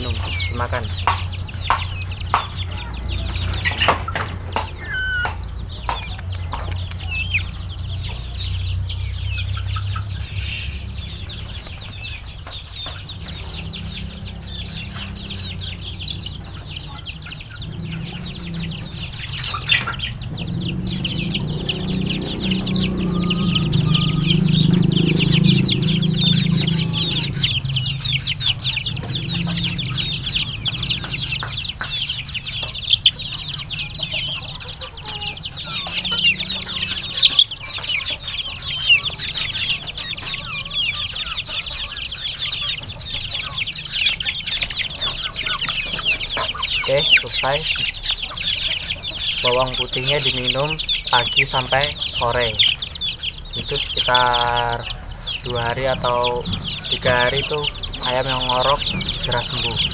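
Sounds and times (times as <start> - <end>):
low drone: 0.0 - 52.6
chickens clucking: 0.0 - 59.9
sharp clicks and knocks: 1.0 - 7.1.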